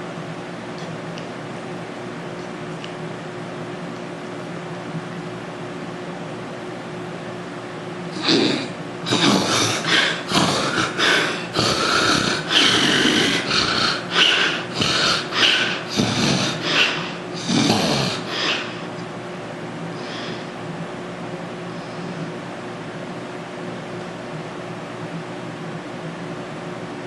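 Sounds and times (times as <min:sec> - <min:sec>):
steady background hum: 0:00.0 - 0:27.0
man snoring: 0:08.1 - 0:18.9.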